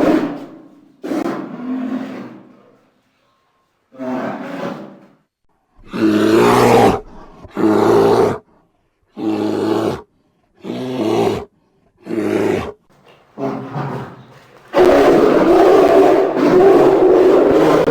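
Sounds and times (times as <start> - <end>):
bear roaring: 0.0 - 2.8, 5.8 - 8.5, 9.1 - 12.8, 13.4 - 17.9.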